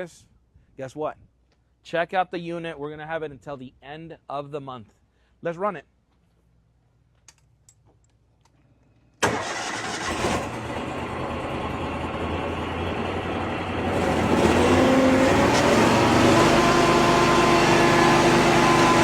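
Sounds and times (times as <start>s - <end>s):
carpet cleaning engine running: 9.3s - 19.0s.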